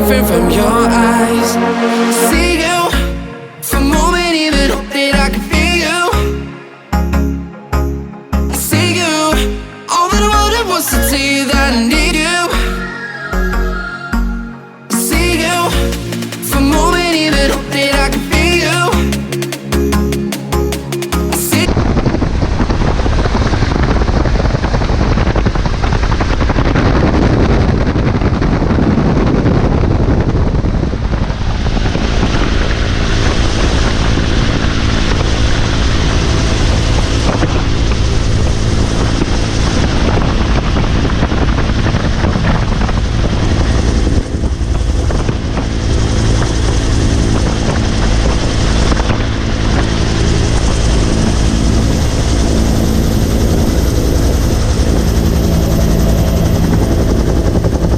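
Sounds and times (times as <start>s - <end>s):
music: 0.0s - 21.7s
helicopter rotor and engine: 33.4s - 57.9s.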